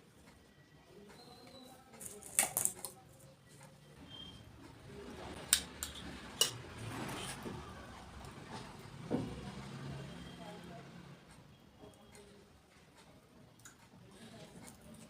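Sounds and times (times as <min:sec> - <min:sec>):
crisp shells cracking and crunching: 0:02.0 - 0:03.0.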